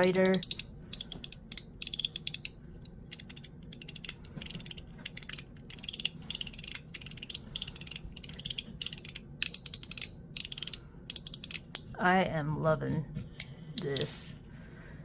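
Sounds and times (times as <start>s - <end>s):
fidget slider clicking: 0.0s - 11.7s.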